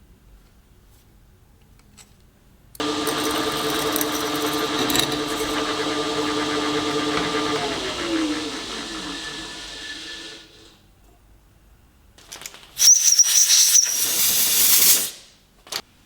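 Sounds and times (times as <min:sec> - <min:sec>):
power tool motor running: 0:02.8 - 0:10.7.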